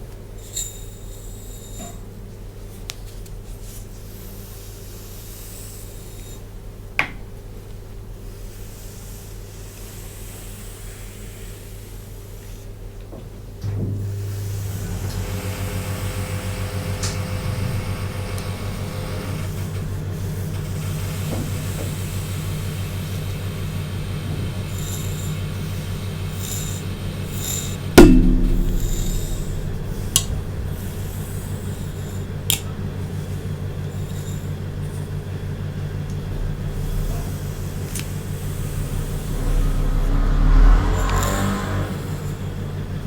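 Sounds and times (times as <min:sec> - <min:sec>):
sharp loud clack: 0:28.0 - 0:32.7.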